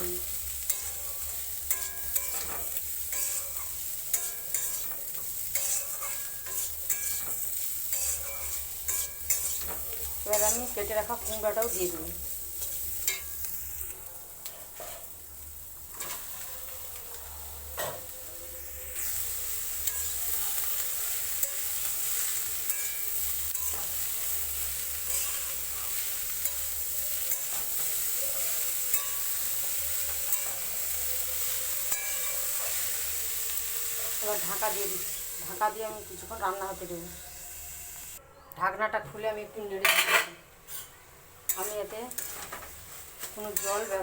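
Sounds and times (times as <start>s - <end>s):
food sizzling in a pan: 0.0s - 38.2s, 39.2s - 44.0s
spatula scraping a pan: 0.6s - 13.8s, 15.9s - 16.9s, 24.6s - 30.8s, 39.8s - 44.0s.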